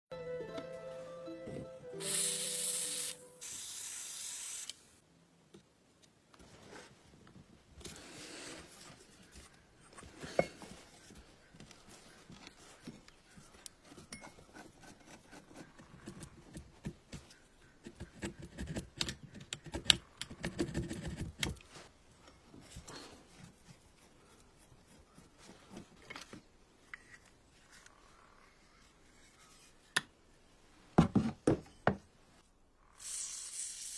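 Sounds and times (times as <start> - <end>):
short hissing bursts: 2.0 - 5.0, 33.0 - 33.9.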